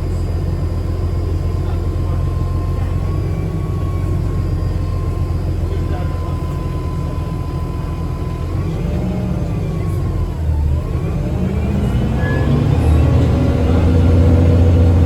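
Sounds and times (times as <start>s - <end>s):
bus drivetrain rumble: 0.0s - 15.0s.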